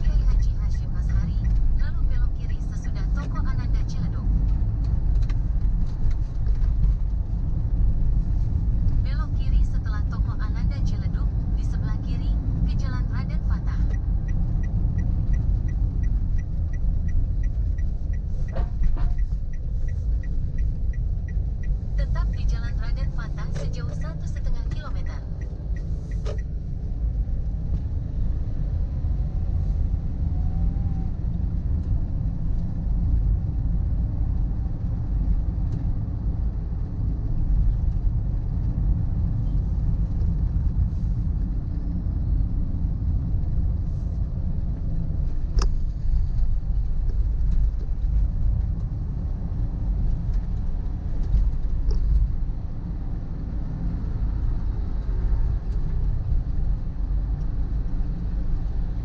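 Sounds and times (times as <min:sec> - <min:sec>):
vehicle driving rumble: 0:00.0 - 0:59.0.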